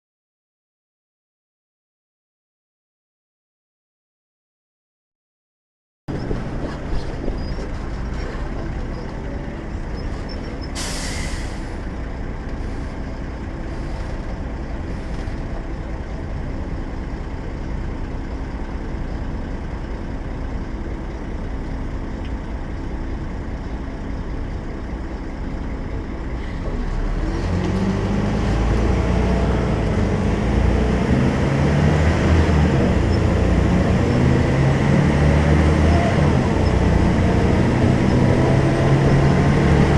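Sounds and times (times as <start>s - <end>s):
bus diesel engine running: 6.1s - 39.9s
air hiss: 10.8s - 11.8s.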